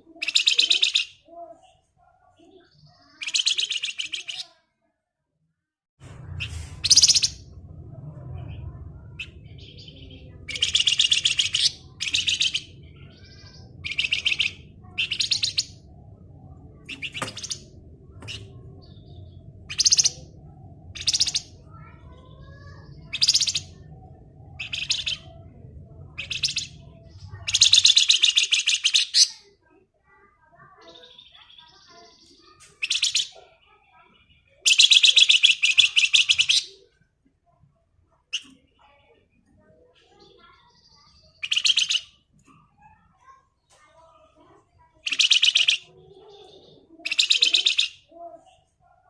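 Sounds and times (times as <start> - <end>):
low steady hum: 6.0 - 27.7.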